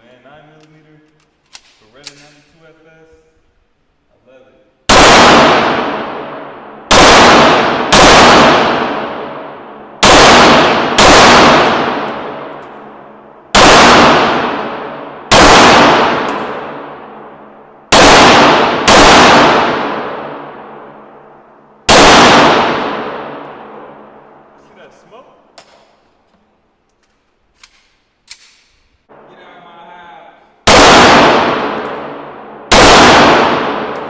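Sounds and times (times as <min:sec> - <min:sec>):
pistol shots echoing: 0:04.9 - 0:24.6, 0:30.6 - 0:34.0.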